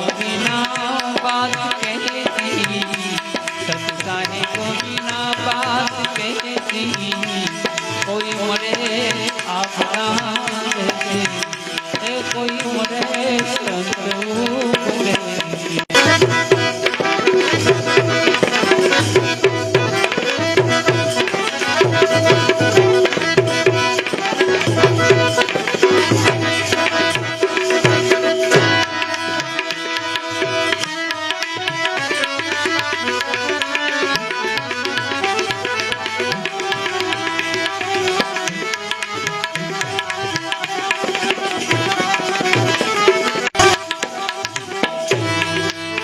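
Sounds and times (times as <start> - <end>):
hand drums: 0.0 - 46.0
held melody notes: 15.9 - 46.0.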